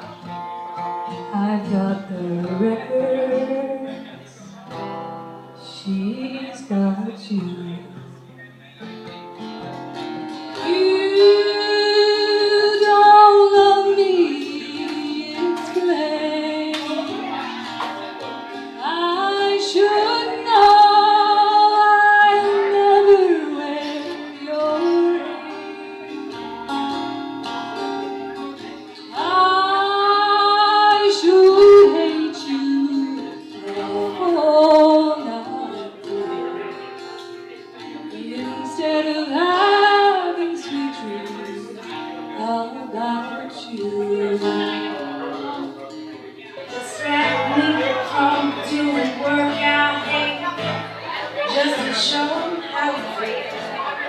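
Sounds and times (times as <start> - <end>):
acoustic guitar: 0.0 - 54.0
woman singing with vibrato: 1.3 - 4.1, 5.6 - 7.9, 10.6 - 17.6, 18.8 - 26.2, 29.1 - 37.0, 38.0 - 45.5, 46.8 - 53.9.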